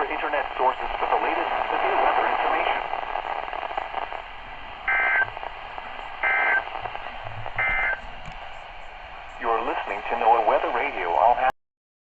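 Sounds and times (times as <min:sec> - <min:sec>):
low radio hiss: 0:00.0 - 0:11.6
warbling two-tone data bursts: 0:07.6 - 0:08.0.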